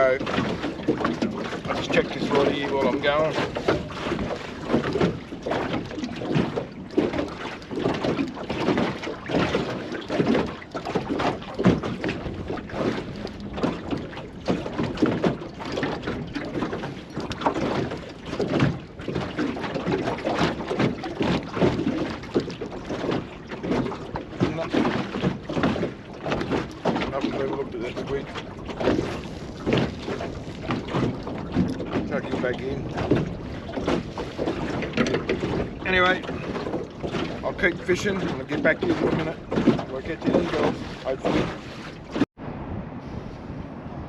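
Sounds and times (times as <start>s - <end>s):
water slapping against boat hull: 0.0s - 42.4s
wind buffeting microphone: 0.0s - 44.0s.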